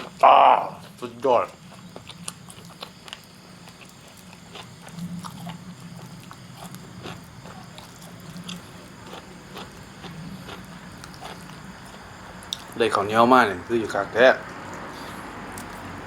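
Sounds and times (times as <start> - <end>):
person chewing: 0.0 - 12.8
low steady hum: 0.0 - 16.0.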